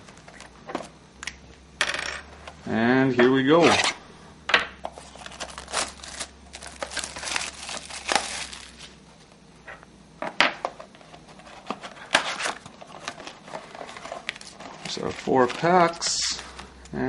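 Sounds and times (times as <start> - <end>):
plastic wrapping crinkling and tearing: 4.9 - 9.0, 11.6 - 16.8
cardboard being handled: 11.0 - 16.7.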